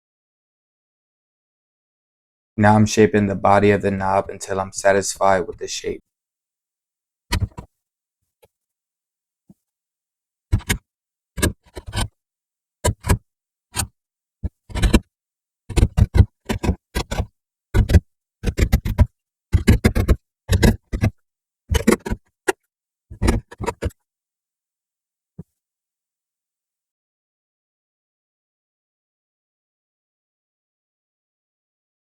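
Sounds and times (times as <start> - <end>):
hand tool scraping wood: 21.7 - 22.2, 23.1 - 23.9.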